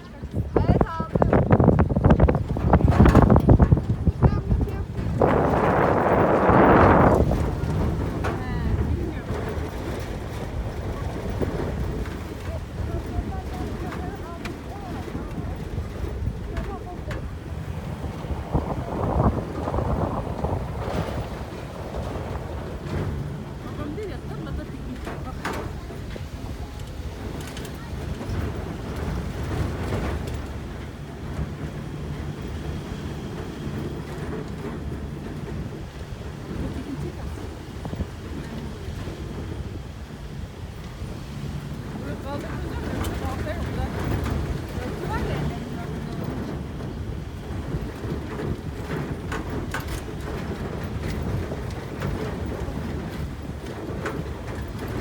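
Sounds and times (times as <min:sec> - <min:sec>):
vehicle engine and road rumble: 0:00.0 - 0:55.0
sharp knocks and rattles: 0:00.6 - 0:55.0
faint clicks and knocks: 0:20.4 - 0:39.7.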